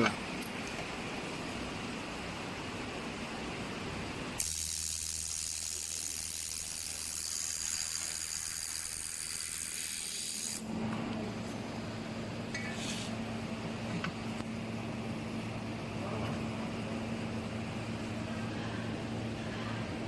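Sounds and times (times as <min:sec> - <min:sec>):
laser welder hiss and sizzle: 0:04.4 - 0:10.6
low machine hum: 0:10.4 - 0:20.0.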